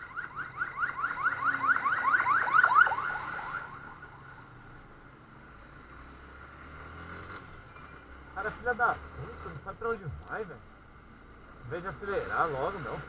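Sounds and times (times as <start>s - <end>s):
electronic siren yelping: 0.0s - 4.4s.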